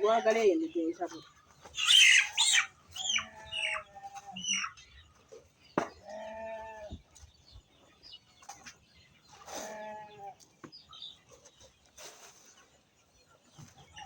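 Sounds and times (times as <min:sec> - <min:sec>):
chickens clucking: 0:00.0 - 0:14.0.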